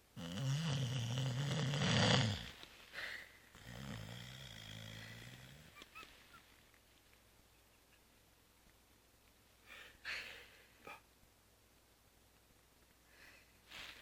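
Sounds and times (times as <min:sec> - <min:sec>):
dog snoring: 0:00.1 - 0:02.6, 0:03.6 - 0:05.8.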